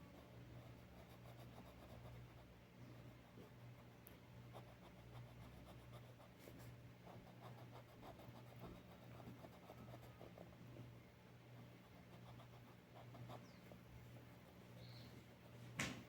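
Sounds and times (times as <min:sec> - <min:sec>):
pencil scratching on paper: 0:00.0 - 0:03.9, 0:04.5 - 0:10.6, 0:11.6 - 0:13.5.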